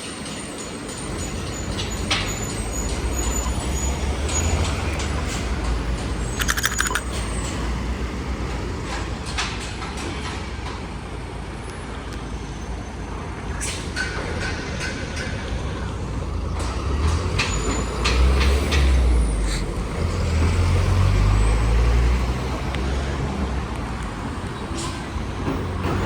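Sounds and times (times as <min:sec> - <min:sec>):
road traffic: 0:00.1 - 0:26.0
rapid rattling clicks: 0:06.4 - 0:07.0.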